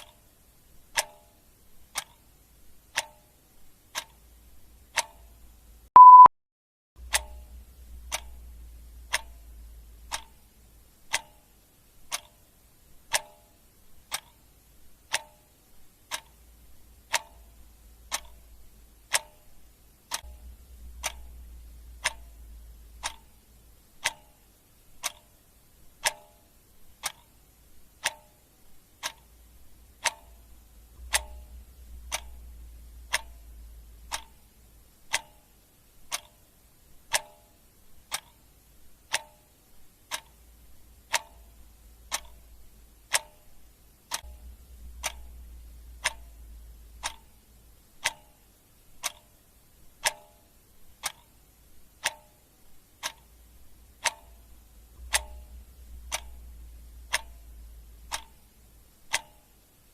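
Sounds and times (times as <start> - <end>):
clock ticking: 0.0 - 6.3, 7.0 - 59.9
faint low hum: 7.0 - 59.9.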